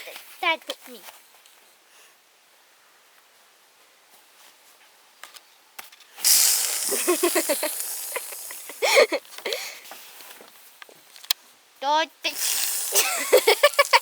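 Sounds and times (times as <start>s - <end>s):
child hissing with squeaks: 6.2s - 9.2s, 12.3s - 13.3s.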